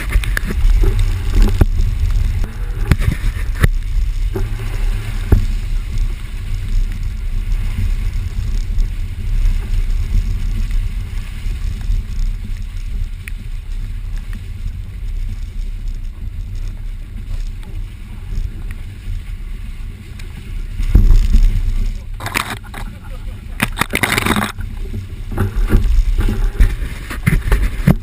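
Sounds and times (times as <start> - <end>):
off-road vehicle rumbling: 0.0 - 28.0.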